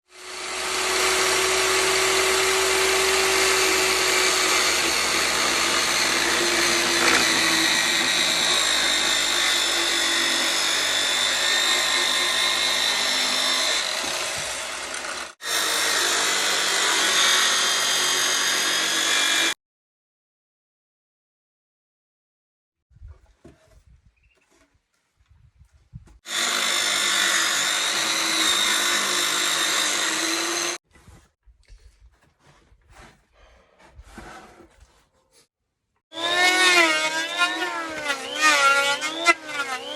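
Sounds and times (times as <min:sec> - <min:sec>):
power tool whining on wood: 0:00.1 - 0:19.6, 0:26.2 - 0:30.8, 0:36.1 - 0:39.9.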